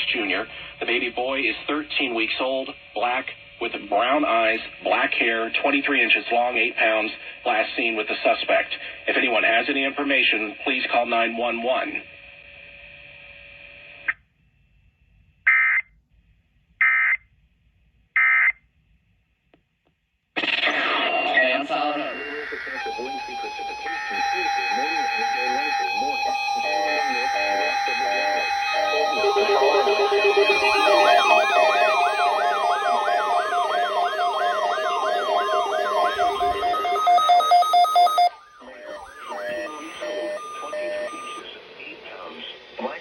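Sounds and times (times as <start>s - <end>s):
digital data screech bursts: 20.4s - 41.6s
electronic yelp siren: 21.2s - 41.5s
steady electronic tones: 21.6s - 41.6s
pulsing beeps: 21.7s - 41.6s.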